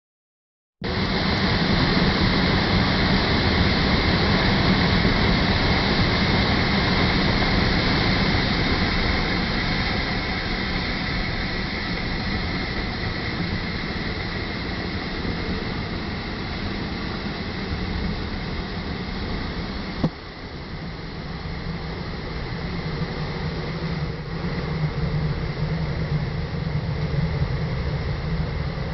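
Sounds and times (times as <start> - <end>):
waterfall rushing: 0.9 - 20.4.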